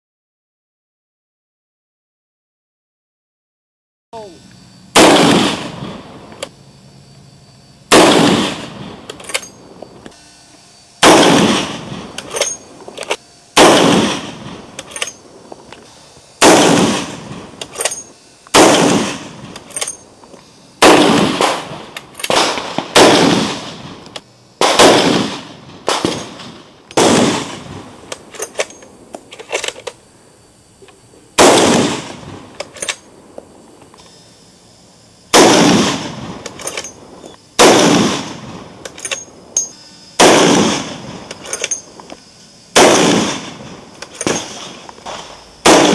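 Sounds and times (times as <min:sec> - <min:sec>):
rifle shots echoing: 0:05.0 - 0:06.4, 0:07.9 - 0:09.8, 0:11.0 - 0:12.9, 0:13.6 - 0:15.5, 0:16.4 - 0:20.0, 0:20.8 - 0:29.8, 0:31.4 - 0:33.1, 0:35.3 - 0:39.6, 0:40.2 - 0:42.0, 0:42.7 - 0:45.9.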